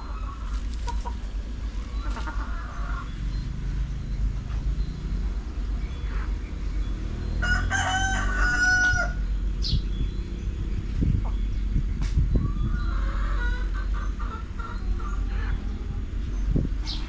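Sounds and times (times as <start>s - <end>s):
chickens clucking: 0.0s - 3.4s, 11.0s - 17.0s
rooster crowing: 7.4s - 9.2s.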